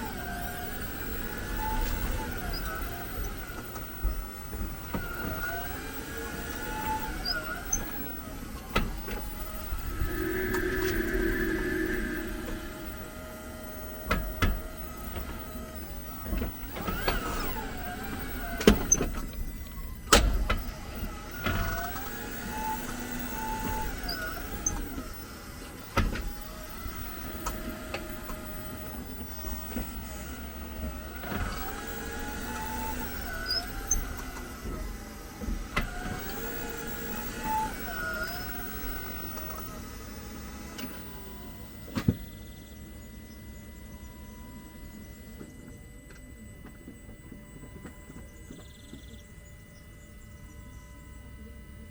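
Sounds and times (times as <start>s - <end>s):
wavering car squeals: 6.6s - 14.9s.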